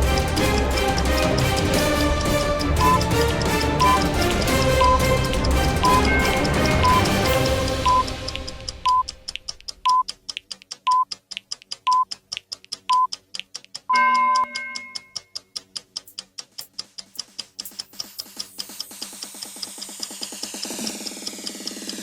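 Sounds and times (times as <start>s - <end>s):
background music: 0.0s - 10.0s
clock ticking quickly: 0.0s - 22.0s
long full beep: 7.8s - 8.1s, 13.9s - 15.2s
short beeps: 7.8s - 8.1s, 13.9s - 15.2s.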